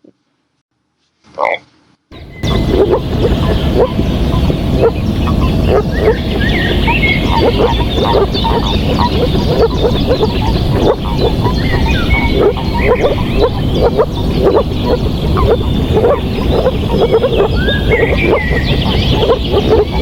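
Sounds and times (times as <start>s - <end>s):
frogs croaking in chorus: 2.2s - 20.0s.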